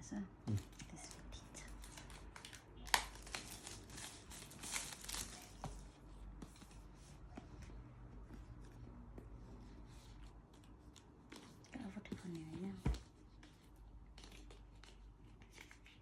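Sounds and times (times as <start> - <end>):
paper and plastic rustling: 1.6 - 6.0.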